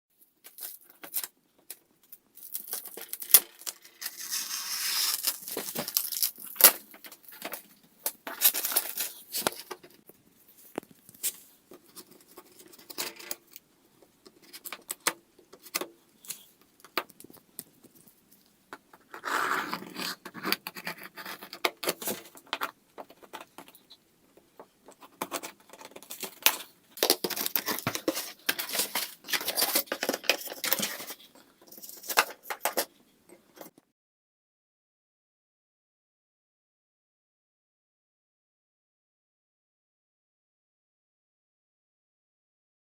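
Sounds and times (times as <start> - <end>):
packaging tearing and crumpling: 2.4 - 7.0, 8.3 - 9.6, 26.2 - 31.2.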